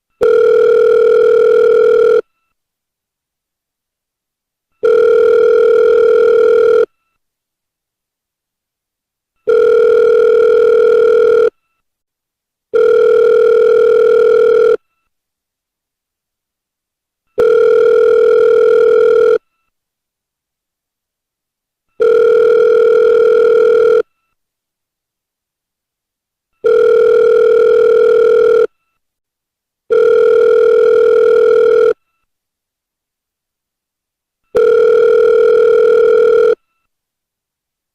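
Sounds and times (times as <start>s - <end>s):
telephone ringback tone: 0.2s - 2.3s, 4.8s - 6.9s, 9.4s - 11.6s, 12.8s - 14.8s, 17.4s - 19.4s, 22.0s - 24.1s, 26.6s - 28.7s, 29.9s - 32.0s, 34.5s - 36.7s.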